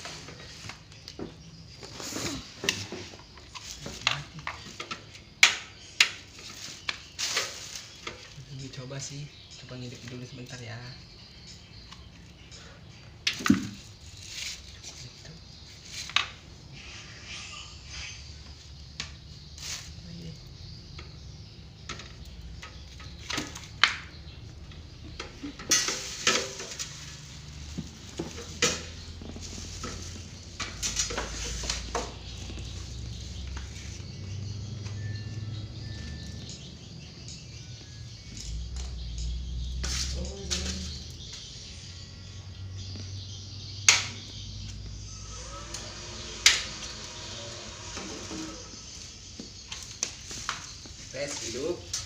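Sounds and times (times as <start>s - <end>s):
steady low hum: 24.0s - 51.2s
metal parts and tools clattering: 25.1s - 32.4s.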